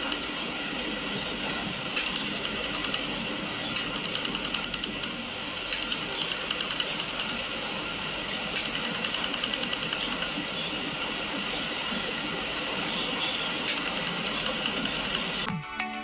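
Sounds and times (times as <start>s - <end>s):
laser welder ticking pulses: 0.0s - 0.3s, 1.9s - 7.5s, 8.5s - 10.4s, 13.6s - 15.5s
steady machine hum: 0.0s - 15.5s.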